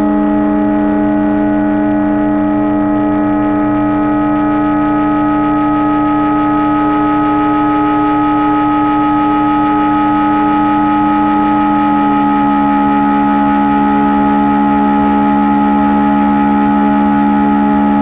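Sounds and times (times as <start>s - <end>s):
dense electronic drone: 0.0s - 18.0s.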